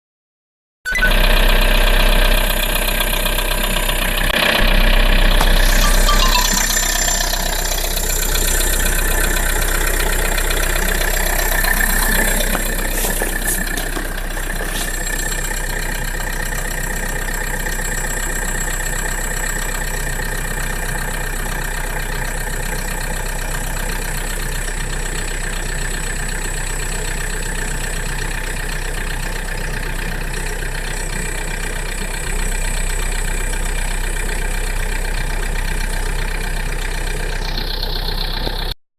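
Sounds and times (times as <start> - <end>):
diesel engine idling: 1.1 - 38.8
high-pitched whistle: 5.4 - 8.9.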